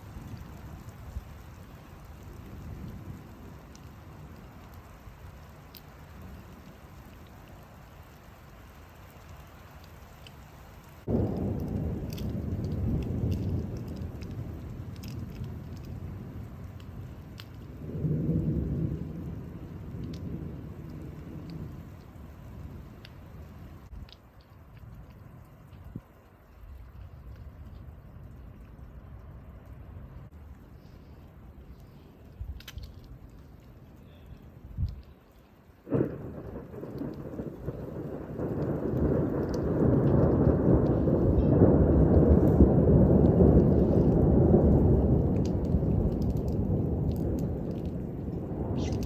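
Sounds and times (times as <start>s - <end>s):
raindrops ticking: 0.0s - 49.0s
thunder rumbling: 0.0s - 49.0s.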